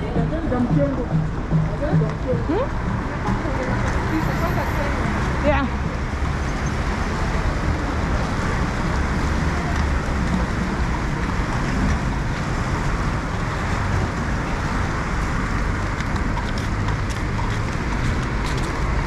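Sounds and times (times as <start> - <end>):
traffic: 0.0 - 19.0.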